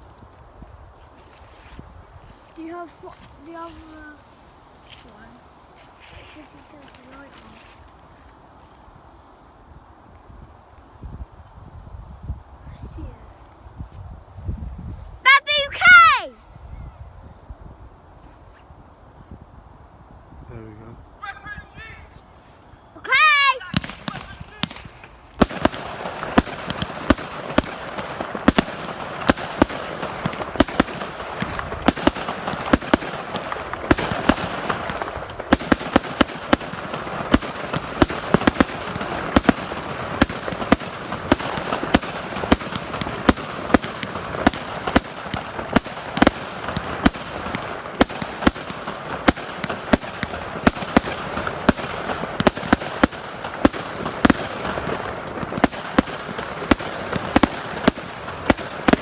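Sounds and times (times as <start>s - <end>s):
firework crackling hiss: 22.1s - 59.0s
firework cake bangs: 23.7s - 59.0s.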